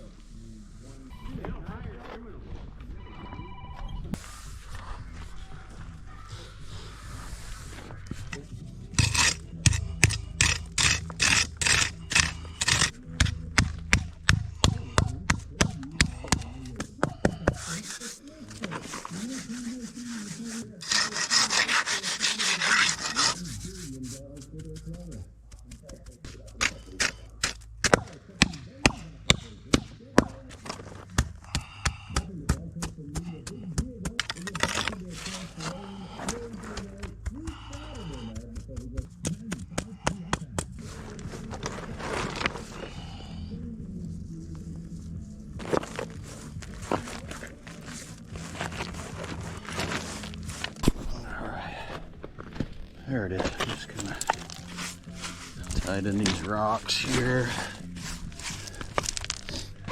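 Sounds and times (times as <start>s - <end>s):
broom scratching on wet concrete: 9.0s - 12.9s, 17.6s - 24.3s, 45.7s - 50.8s, 53.9s - 59.8s.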